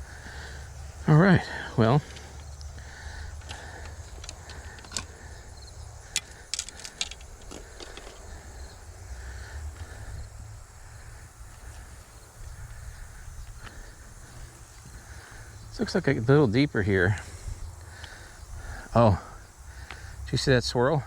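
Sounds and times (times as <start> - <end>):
sharp clicks and rattles: 1.8 - 5.3, 6.0 - 8.5.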